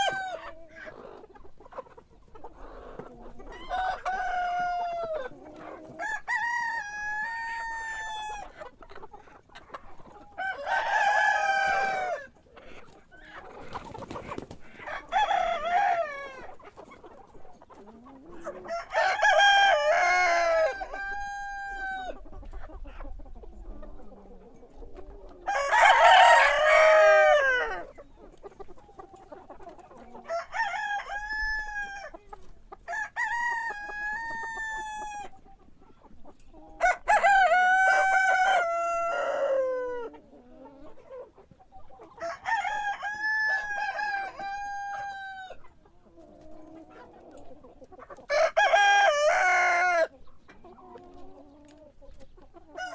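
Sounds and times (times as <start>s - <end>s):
roosters crowing: 0.0s - 1.2s, 2.6s - 8.6s, 10.3s - 12.4s, 13.6s - 16.6s, 18.3s - 22.2s, 25.1s - 28.0s, 30.0s - 32.1s, 32.8s - 35.3s, 36.8s - 40.2s, 42.1s - 45.6s, 48.2s - 50.1s, 52.7s - 52.9s.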